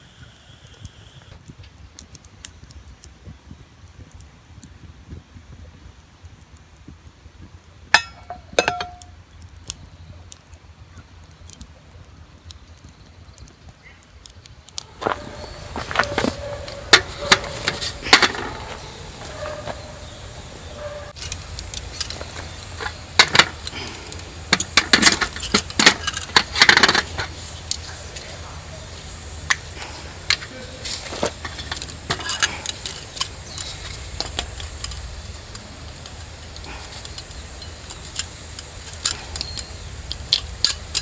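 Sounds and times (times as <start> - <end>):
objects clinking and rattling: 8.0 - 9.1, 14.9 - 27.3, 30.2 - 41.0.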